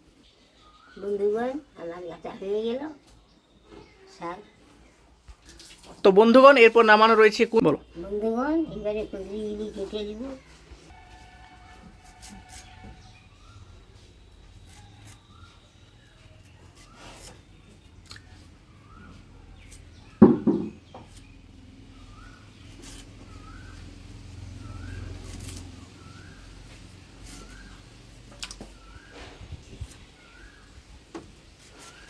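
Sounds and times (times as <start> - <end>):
bird chirping: 0.0 - 5.8, 12.4 - 32.0.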